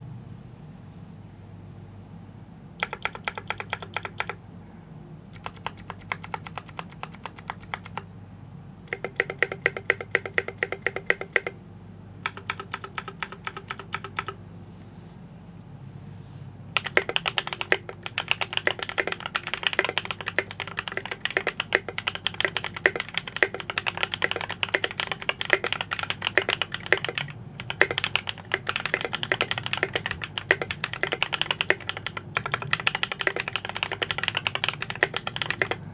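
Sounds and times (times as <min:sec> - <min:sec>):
mechanical keyboard typing: 0:02.8 - 0:04.4, 0:05.3 - 0:08.1, 0:08.9 - 0:11.6, 0:12.2 - 0:14.4, 0:16.8 - 0:35.9.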